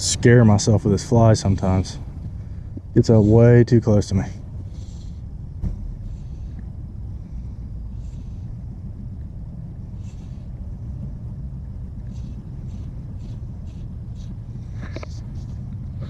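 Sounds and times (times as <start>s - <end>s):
faint hissing swishes: 0.0s - 9.1s
wind rumble on microphone: 0.0s - 16.0s.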